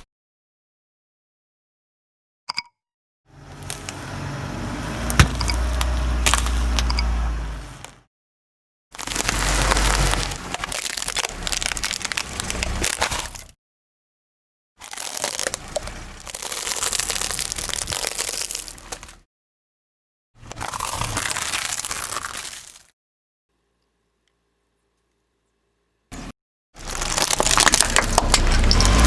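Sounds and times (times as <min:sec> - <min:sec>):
tyre crushing objects: 0:04.9 - 0:06.9, 0:09.0 - 0:13.4, 0:26.8 - 0:29.0.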